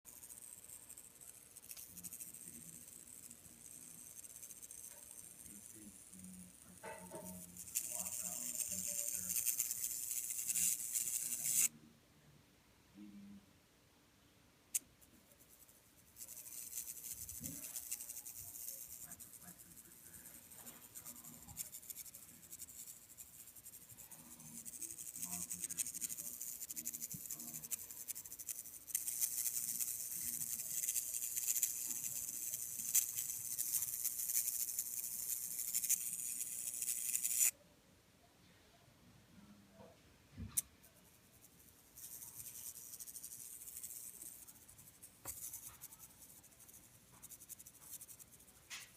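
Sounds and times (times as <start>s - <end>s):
television crackling sizzle: 0.1s - 11.7s, 16.2s - 37.6s.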